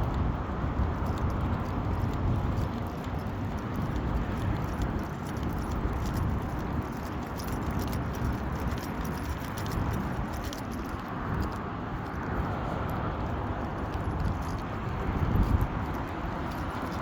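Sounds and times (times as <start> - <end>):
dog collar jingling: 1.1 - 11.5, 13.8 - 17.0.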